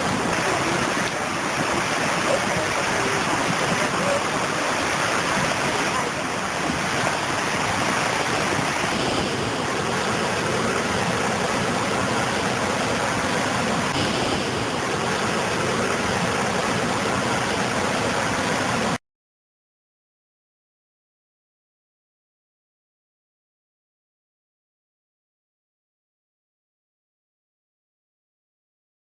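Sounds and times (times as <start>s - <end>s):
floodwater rushing: 0.0s - 19.0s.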